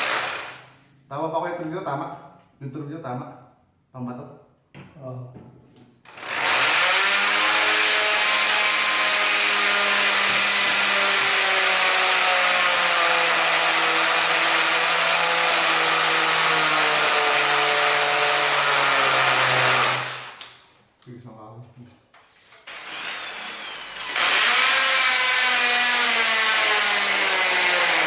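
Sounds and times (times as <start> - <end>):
electric drill drilling: 0.0 - 0.7, 6.1 - 20.4, 22.6 - 28.0.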